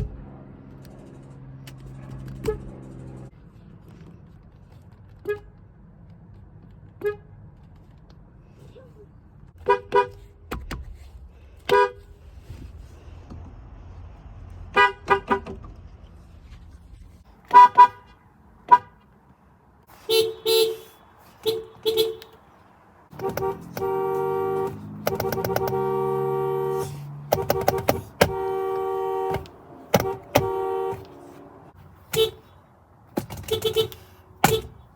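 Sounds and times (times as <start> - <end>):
car horn beeps: 5.2 - 5.6, 7.0 - 7.4, 9.6 - 10.2, 17.5 - 19.0, 20.0 - 22.5, 23.1 - 32.5, 33.3 - 34.9.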